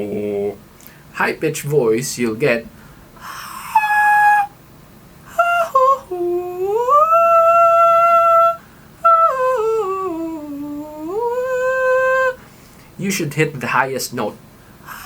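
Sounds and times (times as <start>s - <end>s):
man singing high held tones: 3.4s - 4.5s, 5.3s - 12.4s.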